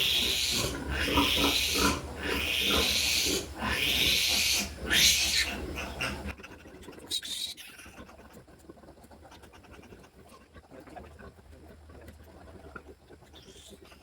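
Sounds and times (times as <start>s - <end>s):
piglet squealing: 0.0s - 6.4s.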